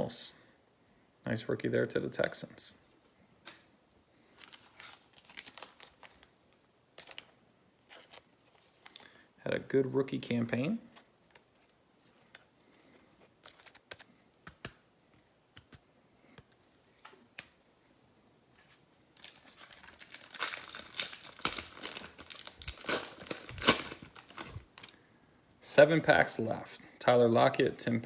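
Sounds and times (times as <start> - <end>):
card pack wrapper tearing and crinkling: 4.3 - 6.3, 7.0 - 9.0, 13.4 - 14.1, 19.2 - 25.0
cards clicking: 13.4 - 14.8.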